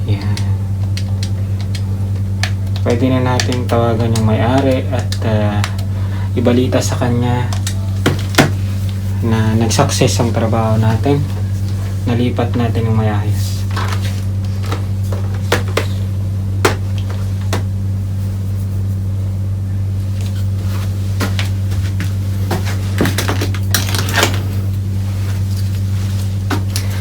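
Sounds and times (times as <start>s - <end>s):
steady low hum: 0.0s - 27.0s.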